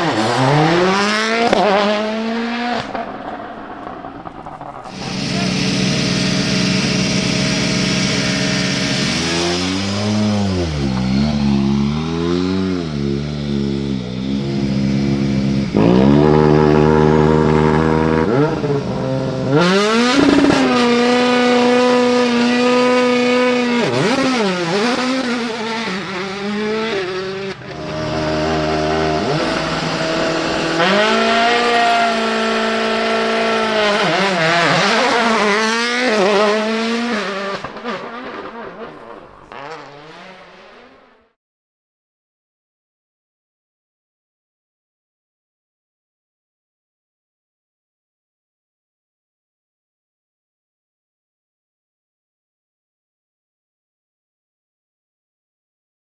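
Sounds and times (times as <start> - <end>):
rally car engine revving: 0.0 - 41.3
rally car accelerating hard: 0.0 - 41.4.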